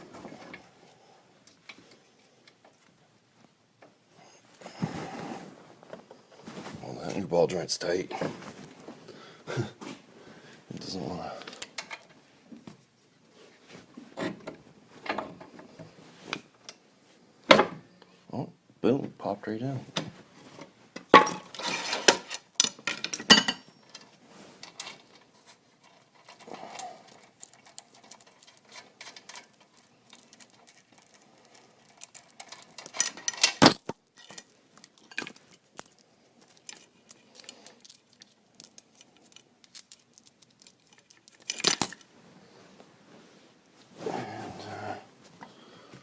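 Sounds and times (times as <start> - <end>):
metal tools clinking and rattling: 21.1 - 42.1.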